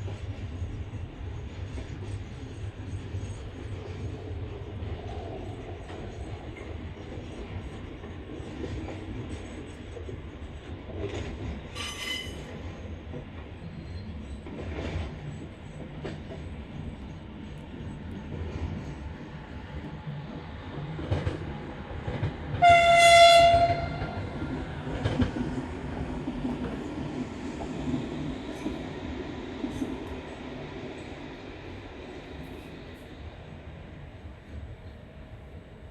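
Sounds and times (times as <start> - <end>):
freight train rumbling: 0.0 - 35.9
train horn: 11.8 - 12.4, 22.5 - 24.4.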